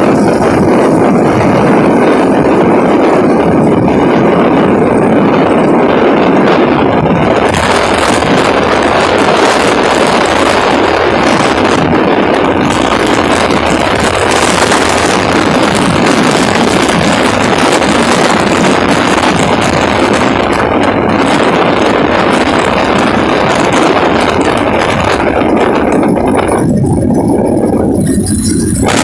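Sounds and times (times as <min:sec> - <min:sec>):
strong wind blowing: 0:00.0 - 0:29.0.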